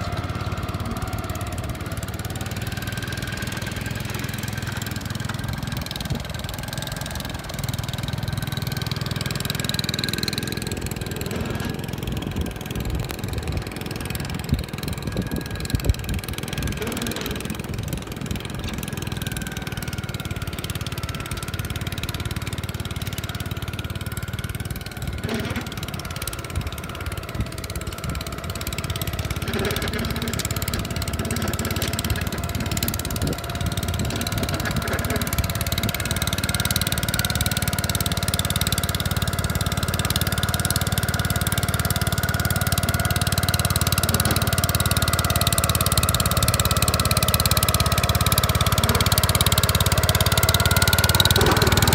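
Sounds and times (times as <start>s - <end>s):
snow cannon whine: 0.0s - 21.6s, 39.3s - 51.9s
tractor engine drone: 0.0s - 51.9s.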